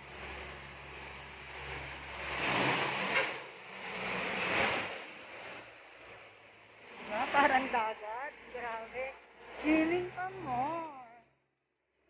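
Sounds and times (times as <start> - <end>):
rushes of water: 0.0 - 7.7
vehicle engine running: 0.0 - 12.0.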